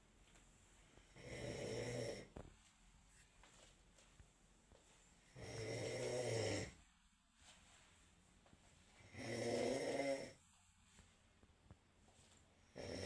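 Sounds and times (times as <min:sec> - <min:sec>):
quiet breathing: 0:00.2 - 0:13.0
person snoring: 0:01.1 - 0:02.4, 0:05.3 - 0:06.8, 0:09.0 - 0:10.4, 0:12.6 - 0:13.0.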